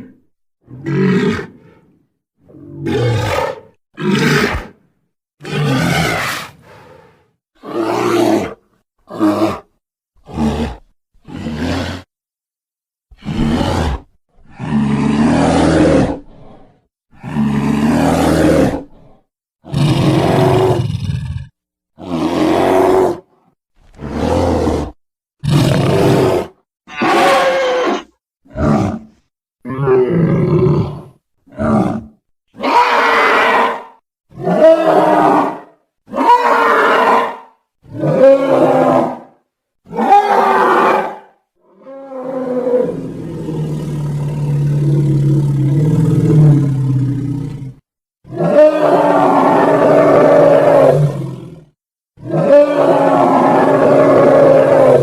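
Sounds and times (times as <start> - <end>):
gorilla roars: 0.7 - 4.8, 5.4 - 12.1, 13.1 - 55.0.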